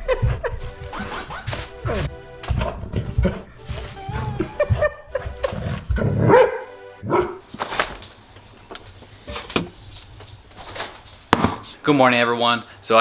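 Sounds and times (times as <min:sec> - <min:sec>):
dog barking: 0:06.2 - 0:07.4.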